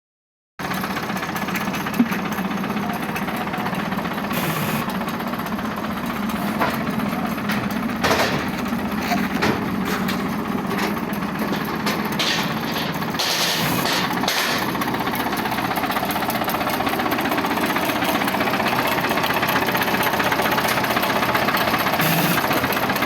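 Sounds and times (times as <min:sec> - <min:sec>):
earthmoving machine engine running: 0:00.6 - 0:23.0
metallic knocks and clanks: 0:06.4 - 0:14.9.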